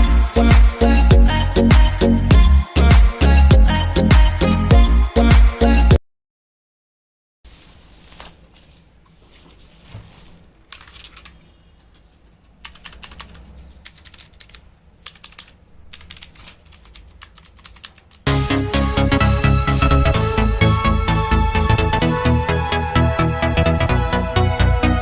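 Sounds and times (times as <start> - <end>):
loud electronic music: 0.0 - 6.0, 18.3 - 25.0
mechanical keyboard key clicks: 12.6 - 18.3.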